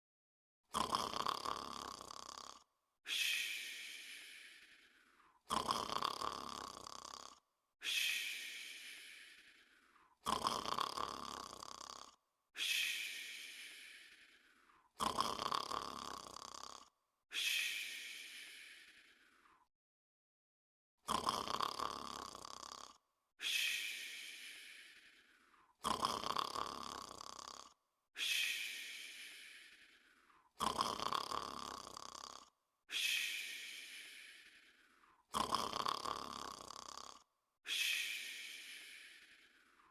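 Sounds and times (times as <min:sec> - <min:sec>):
rasping snore: 0:00.7 - 0:19.7, 0:21.0 - 0:39.9
airy breath: 0:03.1 - 0:05.5, 0:07.8 - 0:10.2, 0:12.6 - 0:14.9, 0:17.3 - 0:19.6, 0:23.4 - 0:25.7, 0:28.2 - 0:30.5, 0:32.9 - 0:35.2, 0:37.7 - 0:39.9.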